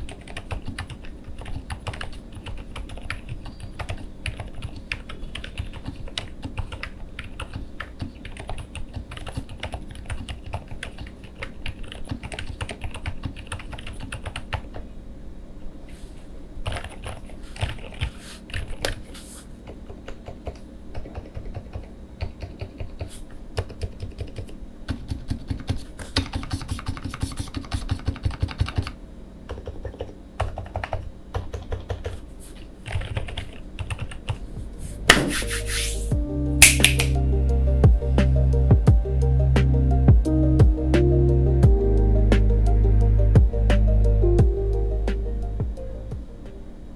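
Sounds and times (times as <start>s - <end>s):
mechanical keyboard keystroke clacks: 19.6s - 32.2s.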